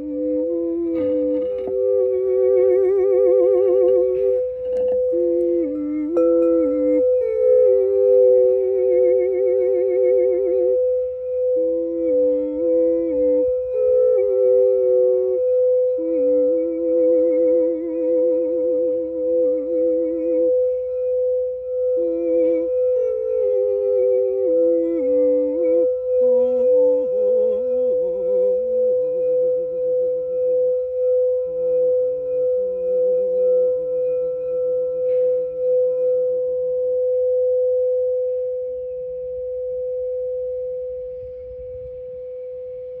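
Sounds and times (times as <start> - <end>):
person humming a melody: 0.0 - 20.6, 22.0 - 29.1
singing bowl steady tone: 0.0 - 43.0.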